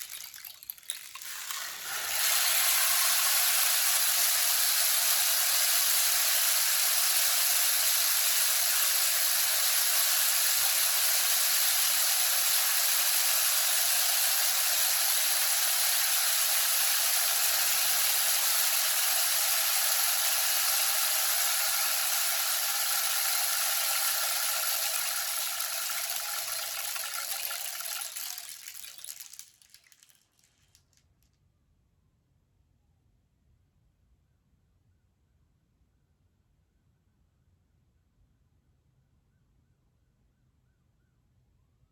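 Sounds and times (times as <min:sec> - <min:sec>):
rainstick rattling hiss: 0:00.0 - 0:30.8.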